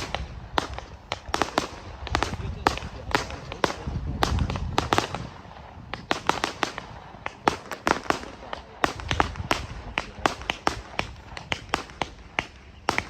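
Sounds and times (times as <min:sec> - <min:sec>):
fireworks bangs: 0:00.0 - 0:13.0.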